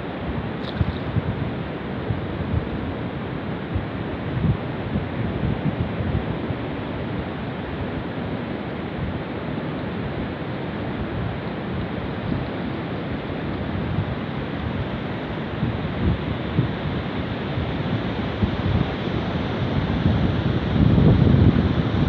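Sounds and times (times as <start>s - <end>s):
wind buffeting microphone: 0.3s - 6.6s, 11.0s - 22.0s.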